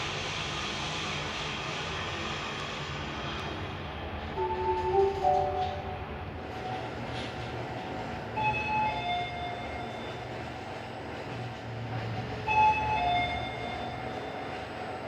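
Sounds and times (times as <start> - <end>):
elevator low hum: 4.3 - 7.1
elevator chime ding-dong: 4.4 - 6.3.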